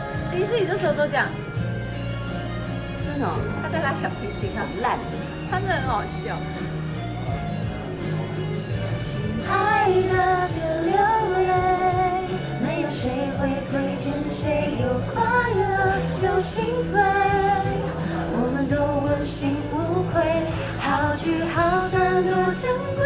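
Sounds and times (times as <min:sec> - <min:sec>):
instrumental accompaniment: 0:00.0 - 0:23.0
woman singing pop song: 0:00.0 - 0:23.0.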